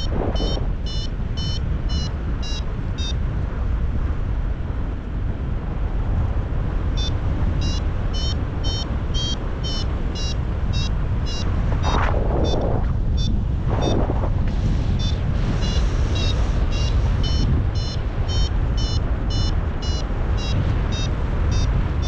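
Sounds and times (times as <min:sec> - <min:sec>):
variometer beeping in high pips: 0:00.0 - 0:03.2, 0:07.0 - 0:14.1, 0:15.0 - 0:21.8
wind rumble on microphone: 0:00.0 - 0:22.0.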